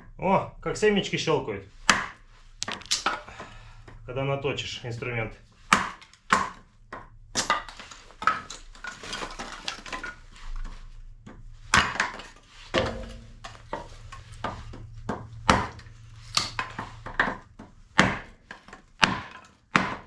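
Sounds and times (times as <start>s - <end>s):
axe chopping wood: 1.8s - 3.5s, 5.7s - 9.5s, 11.3s - 20.0s.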